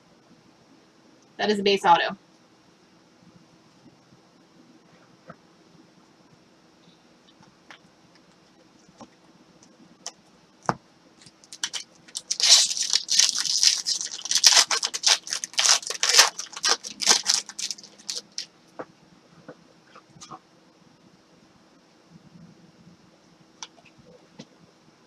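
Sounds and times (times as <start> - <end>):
foil wrapper tearing and crinkling: 11.2 - 18.5.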